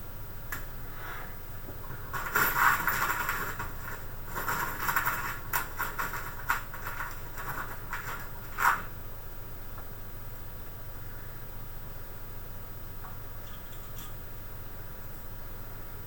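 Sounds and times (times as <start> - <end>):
scraping and rustling of computer parts: 1.8 - 9.0.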